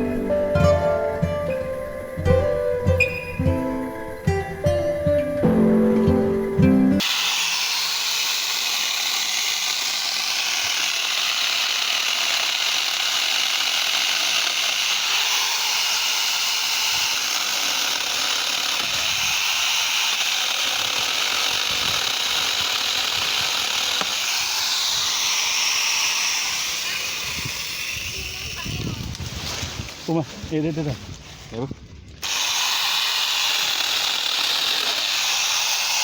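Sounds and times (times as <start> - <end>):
guitar music: 0.0 - 7.0
angle grinder whirring: 7.0 - 29.2, 32.2 - 36.0.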